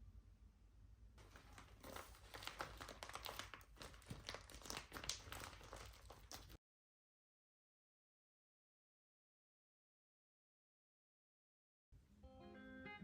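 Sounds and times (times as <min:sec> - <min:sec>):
crinkling and rustling: 0:01.2 - 0:06.6.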